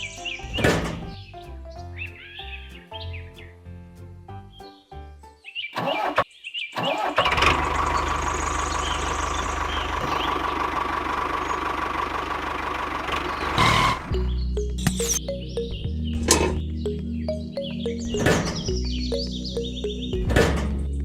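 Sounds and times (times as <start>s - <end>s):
music: 0.0s - 5.8s, 13.9s - 21.0s.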